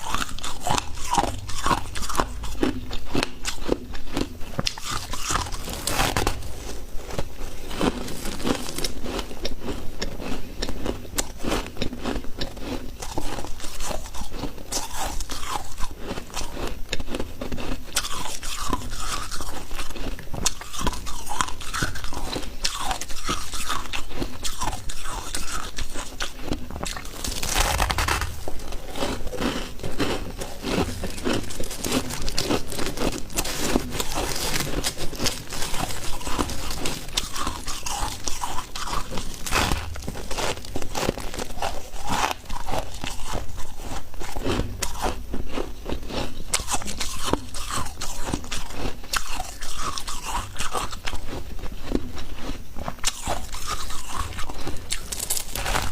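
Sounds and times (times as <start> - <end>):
frost being crunched by chewing: 18.0 - 45.0, 51.9 - 55.9.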